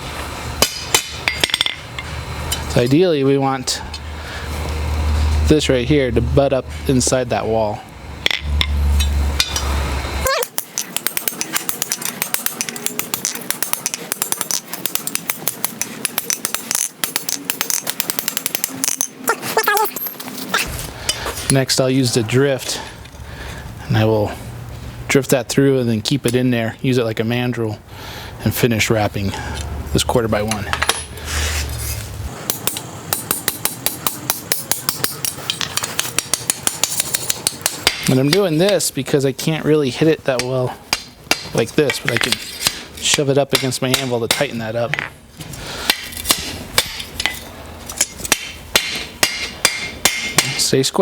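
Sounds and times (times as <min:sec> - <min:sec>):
hammer striking hot steel: 0:00.6 - 0:02.8, 0:08.2 - 0:19.2, 0:32.4 - 0:38.9, 0:40.4 - 0:45.2, 0:45.8 - 0:50.8.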